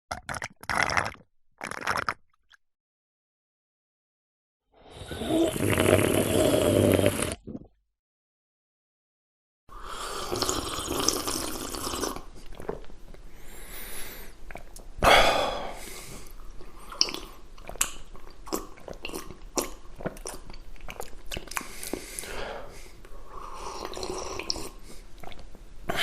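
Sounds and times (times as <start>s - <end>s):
person drinking and swallowing: 0.1s - 2.3s, 5.2s - 7.8s, 10.1s - 12.9s, 14.4s - 22.1s, 23.6s - 25.5s.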